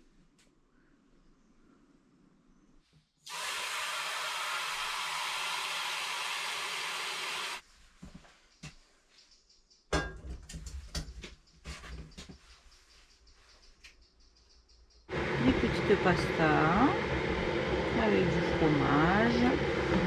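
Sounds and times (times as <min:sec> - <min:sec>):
water running from a tap: 0:03.3 - 0:07.6
cookware knocking and clinking: 0:09.9 - 0:10.6.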